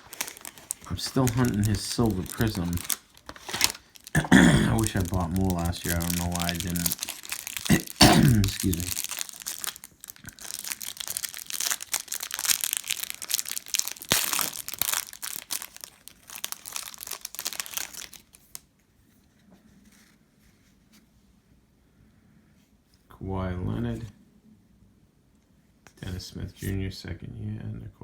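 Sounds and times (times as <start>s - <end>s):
cardboard and wrapping tearing: 0.0s - 18.6s.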